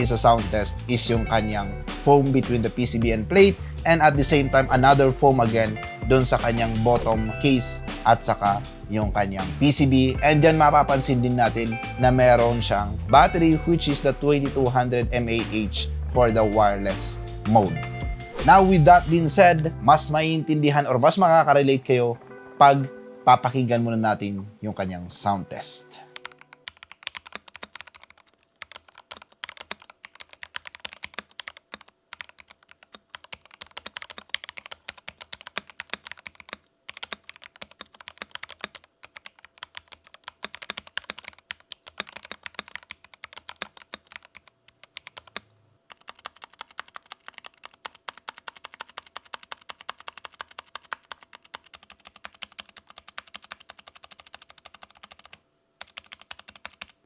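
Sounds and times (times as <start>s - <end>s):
mechanical keyboard typing: 26.2s - 57.0s.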